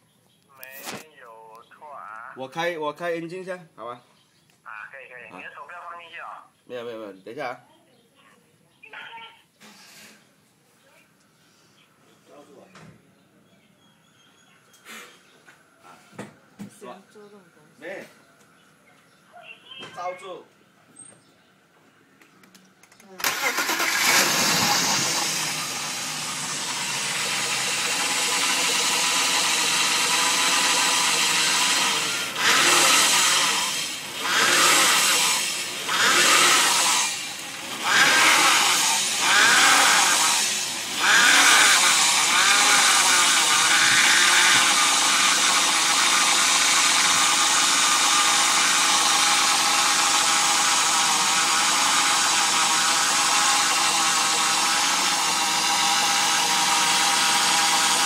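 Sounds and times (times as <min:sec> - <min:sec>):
car engine revving and idling: 0:23.3 - 0:58.0.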